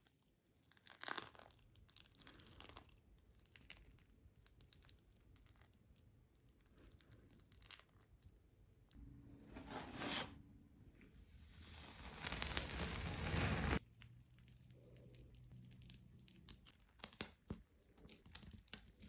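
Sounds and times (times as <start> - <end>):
paste scraped over canvas: 11.4 - 13.8.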